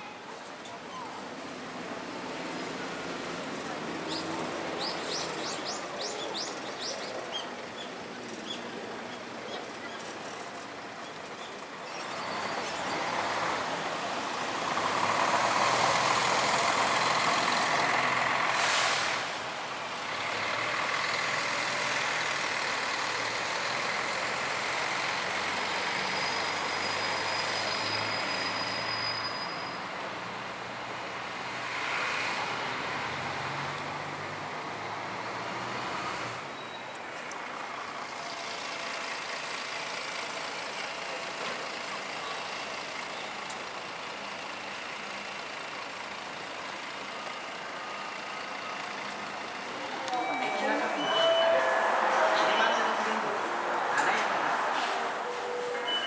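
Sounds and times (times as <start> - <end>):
air brake hiss: 18.5 - 19.4
heavy vehicle passing: 48.8 - 56.0.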